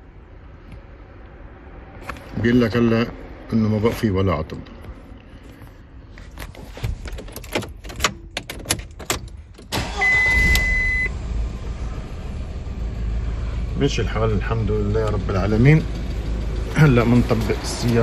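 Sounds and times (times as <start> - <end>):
car engine starting and idling: 6.0 - 18.0
electronic beep: 10.0 - 11.1.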